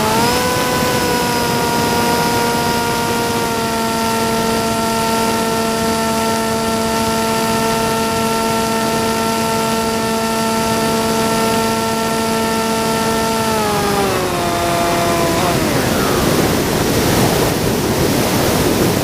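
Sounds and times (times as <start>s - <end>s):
electric motor whine: 0.0s - 19.0s
propeller rushing hiss: 0.0s - 19.0s.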